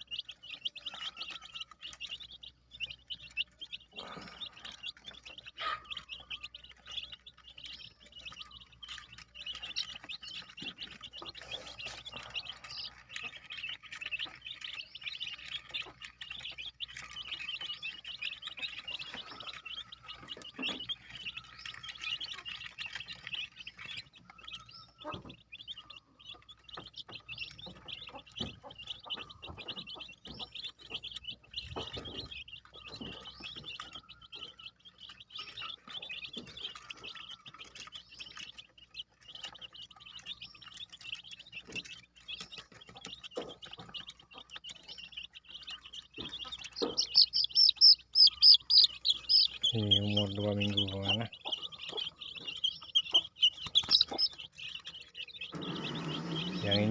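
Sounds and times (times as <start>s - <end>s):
chicks peeping: 0.0s - 56.9s.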